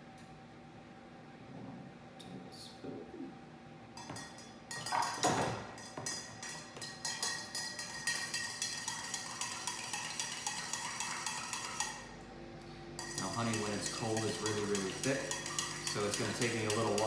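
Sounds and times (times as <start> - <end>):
spoon clinking against container: 4.0 - 12.0, 13.0 - 17.0.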